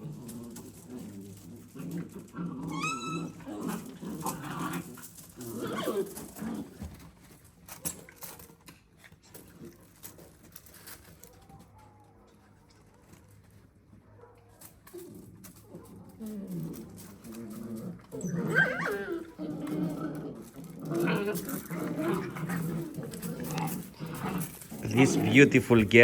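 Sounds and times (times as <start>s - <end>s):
puppies growling: 0.0s - 26.0s
puppies yelping: 0.4s - 4.8s, 15.0s - 25.5s.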